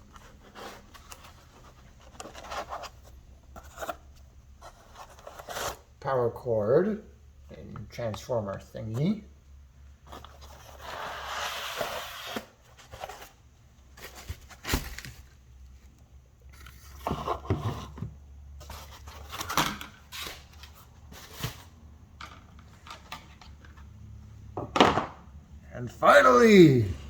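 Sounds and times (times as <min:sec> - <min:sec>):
knocks of parts set down: 0:24.6 - 0:25.2.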